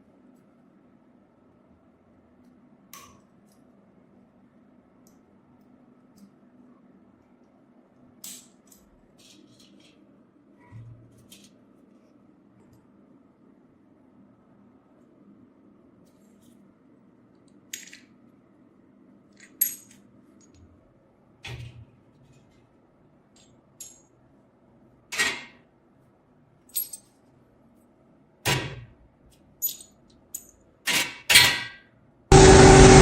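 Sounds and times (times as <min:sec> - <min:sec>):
small metal parts clinking: 0:19.4 - 0:20.6, 0:23.4 - 0:24.1, 0:26.7 - 0:27.2, 0:29.3 - 0:30.6.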